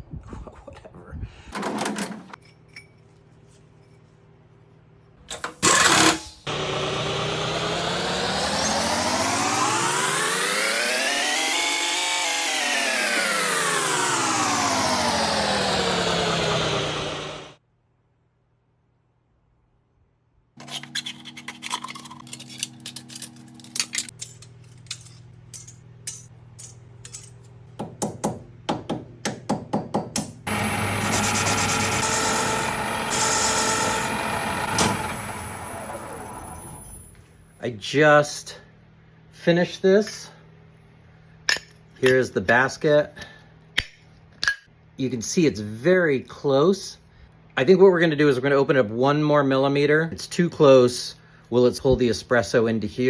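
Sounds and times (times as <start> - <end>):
machine tool whining: 5.6 - 17.6, 30.5 - 37.3
metal parts clinking and scraping: 20.6 - 27.6.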